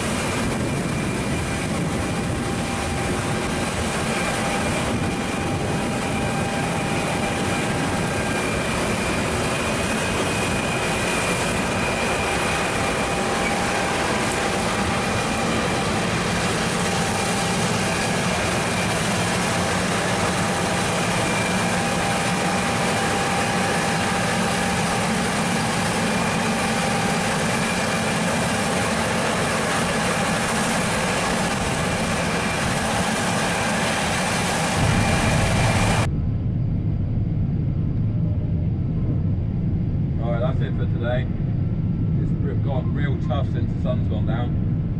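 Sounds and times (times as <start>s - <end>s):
machine whining tones: 0.0s - 42.5s
combine harvester droning: 0.0s - 44.9s.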